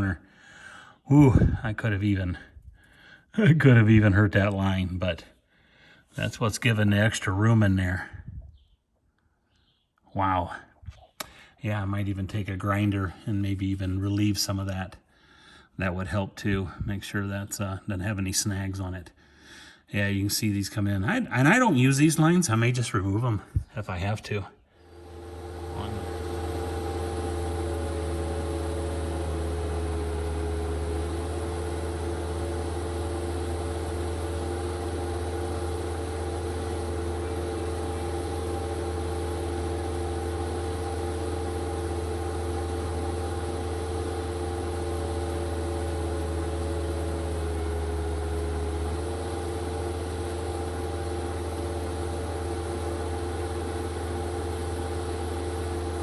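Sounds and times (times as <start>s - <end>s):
diesel engine idling: 24.8s - 56.0s.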